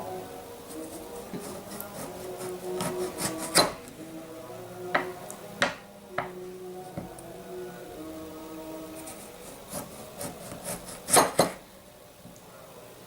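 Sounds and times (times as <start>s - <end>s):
rubbing or scraping: 0.7s - 4.0s, 8.9s - 11.6s.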